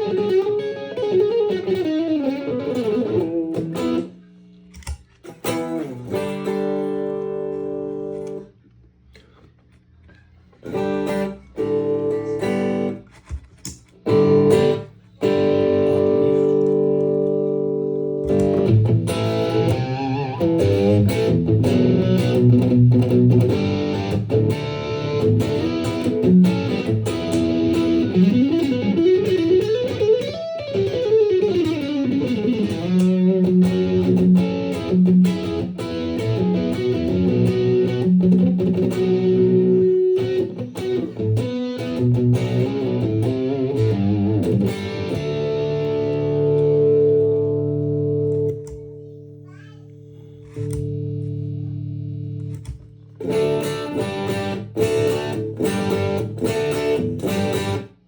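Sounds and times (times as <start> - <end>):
electric guitar notes and chords: 0.0 - 8.6, 10.6 - 58.0.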